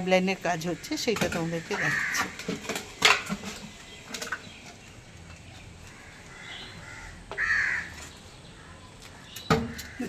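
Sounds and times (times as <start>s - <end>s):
crow cawing: 1.7s - 2.4s, 5.9s - 8.0s, 8.6s - 10.0s.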